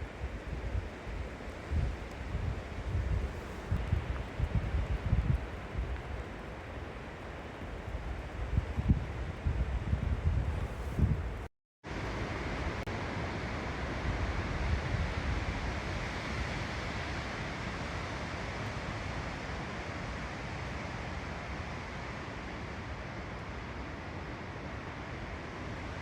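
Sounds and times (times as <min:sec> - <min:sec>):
wind buffeting microphone: 0:00.0 - 0:11.5
wind rushing through trees: 0:00.0 - 0:26.0.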